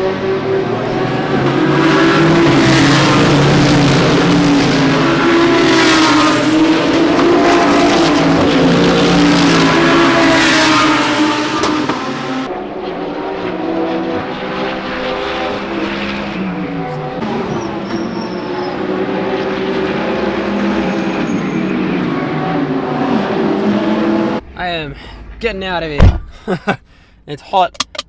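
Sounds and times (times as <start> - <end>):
racing car engines passing: 0.0 - 26.9.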